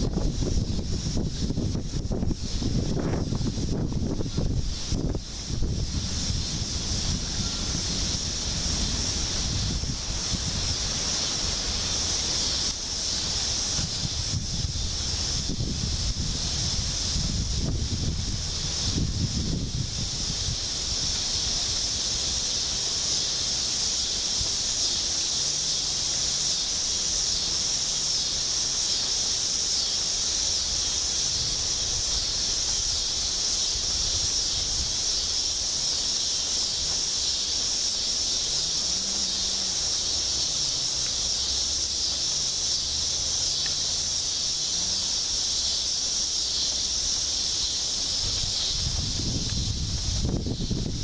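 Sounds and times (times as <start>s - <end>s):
wind buffeting microphone: 0.0s - 22.9s, 47.8s - 51.0s
rain hissing: 0.0s - 51.0s.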